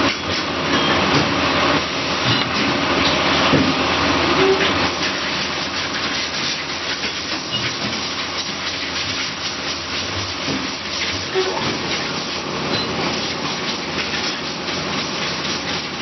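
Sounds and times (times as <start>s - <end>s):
short tone: 4.4s - 4.7s.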